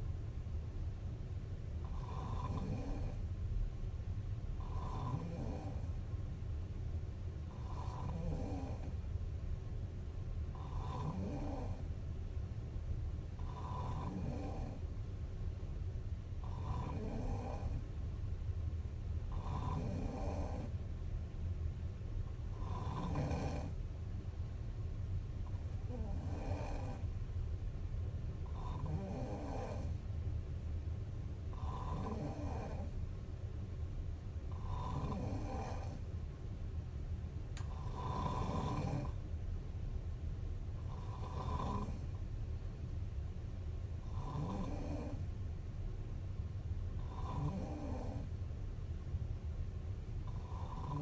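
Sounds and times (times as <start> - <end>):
steady low hum: 0.0 - 51.0
woman snoring: 1.8 - 3.2, 4.6 - 6.0, 7.5 - 9.0, 10.6 - 11.9, 13.4 - 14.8, 16.4 - 17.8, 19.3 - 20.7, 22.5 - 23.8, 25.7 - 27.1, 28.4 - 30.0, 31.5 - 33.0, 34.5 - 36.0, 37.6 - 39.2, 40.8 - 42.1, 44.0 - 45.2, 47.0 - 48.3, 50.2 - 51.0.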